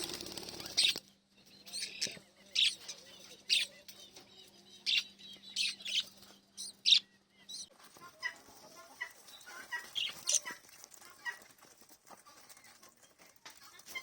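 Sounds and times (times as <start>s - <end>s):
parrots chirping: 1.6s - 8.4s, 9.0s - 10.6s.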